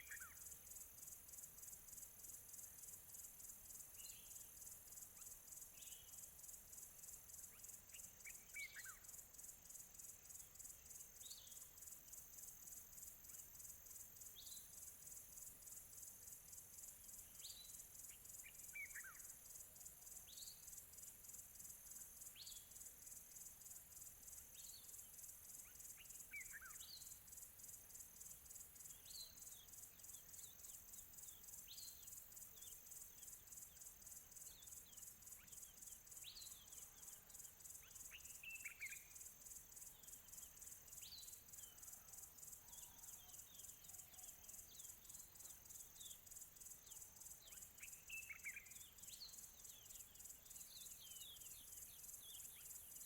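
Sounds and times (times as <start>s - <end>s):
songbirds chirping: 22.2s - 53.0s.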